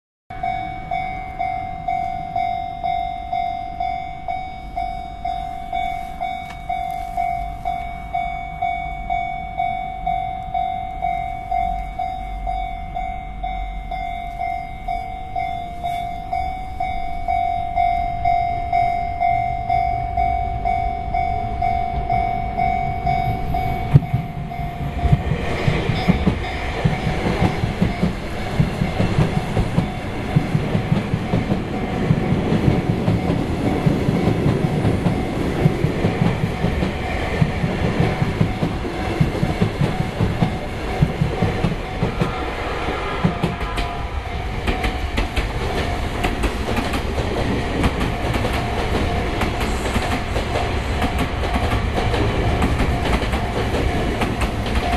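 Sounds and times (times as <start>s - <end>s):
level crossing warning bell: 0.3s - 54.9s
train wheels clattering over rail joints: 25.1s - 42.4s, 44.5s - 54.9s.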